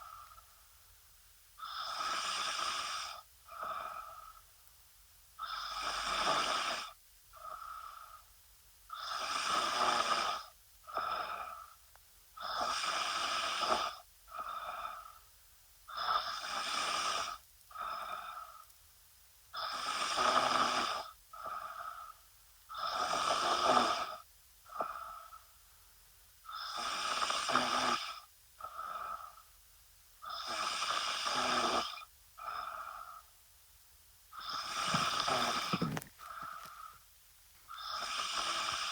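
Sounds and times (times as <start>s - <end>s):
woman snoring: 1.6s - 4.3s, 8.9s - 11.7s, 19.6s - 25.4s, 26.5s - 29.4s, 30.2s - 33.2s, 34.3s - 37.0s, 37.7s - 38.9s.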